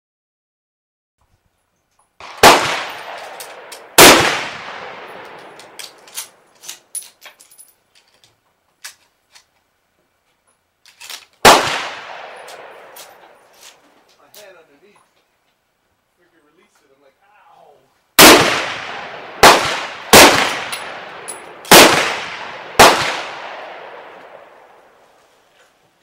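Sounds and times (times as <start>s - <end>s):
rifle shots echoing: 2.2s - 6.5s, 11.4s - 13.5s, 18.2s - 25.0s
light clicks and clinks: 5.3s - 9.4s.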